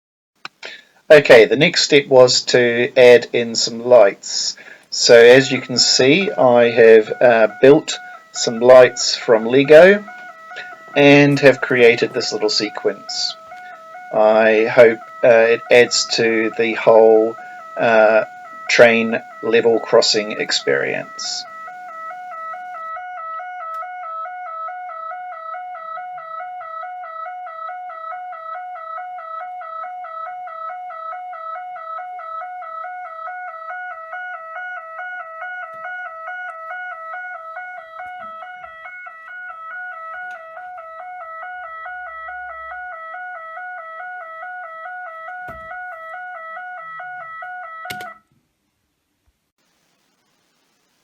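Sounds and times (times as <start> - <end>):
level crossing alarm warble: 0.7 - 48.3.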